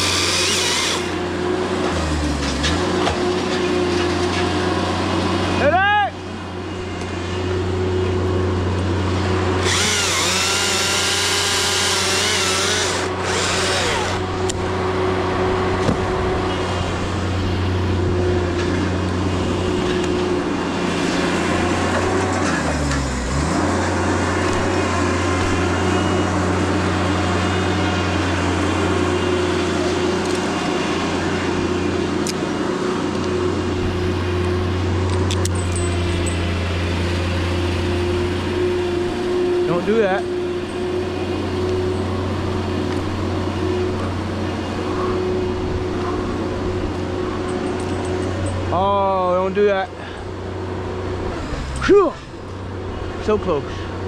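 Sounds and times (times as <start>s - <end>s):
chainsaw cutting at high revs: 0.0s - 3.0s, 9.5s - 14.6s.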